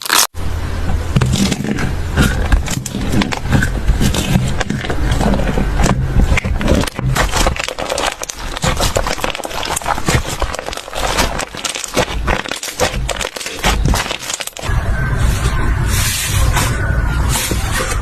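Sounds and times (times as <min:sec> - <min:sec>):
slime squelching: 0:01.1 - 0:18.0
slime crackling and popping: 0:01.2 - 0:14.8.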